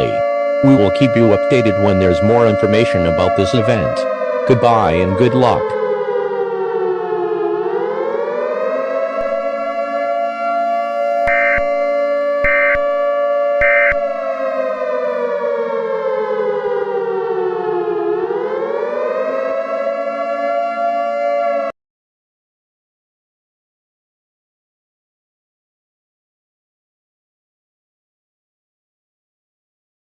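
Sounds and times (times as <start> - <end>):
civil defense siren: 0.0 - 21.8
short beeps: 11.3 - 11.8, 13.6 - 14.1.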